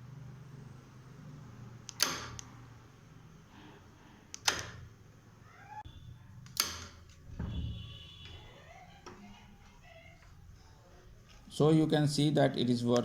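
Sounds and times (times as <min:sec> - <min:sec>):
door lock clacking: 0:01.9 - 0:02.4, 0:04.4 - 0:04.9, 0:06.5 - 0:07.7.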